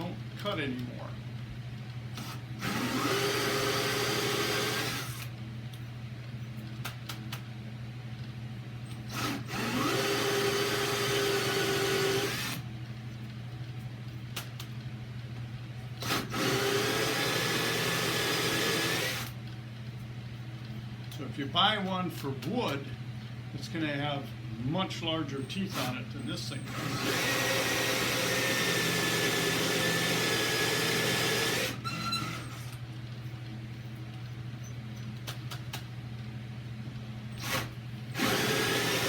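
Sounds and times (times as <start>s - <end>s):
electric drill cutting wood: 2.2s - 5.3s, 9.1s - 12.6s, 16.0s - 19.3s, 26.7s - 32.7s, 37.4s - 39.0s.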